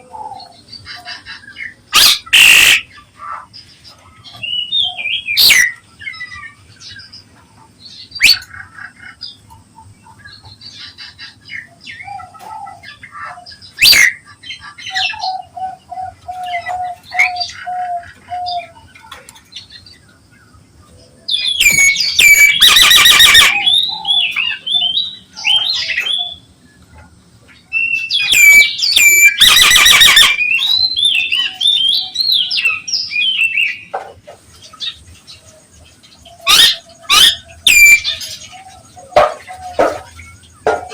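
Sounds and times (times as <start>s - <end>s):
myna harsh squawks: 2.0s - 2.8s, 21.6s - 23.7s
myna whistles and cracking notes: 21.6s - 23.7s, 28.2s - 30.6s, 36.5s - 38.1s.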